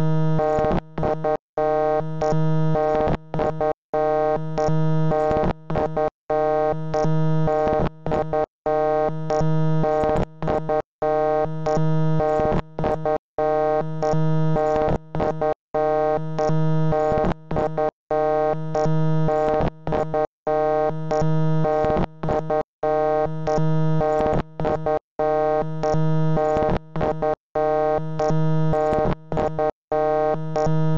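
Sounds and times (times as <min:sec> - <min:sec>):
buzzing synthesized electronic tone: 0:16.1 - 0:30.9.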